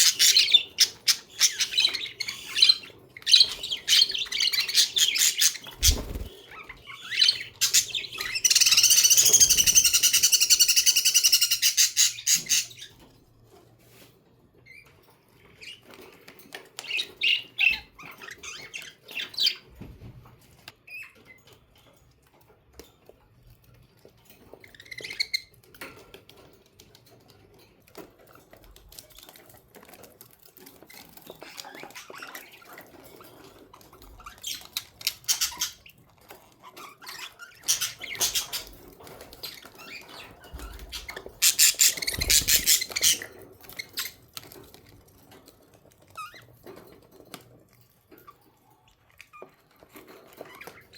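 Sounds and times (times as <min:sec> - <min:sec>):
budgerigars chirping and warbling: 0:00.0 - 0:13.1, 0:16.8 - 0:19.7, 0:31.4 - 0:44.6.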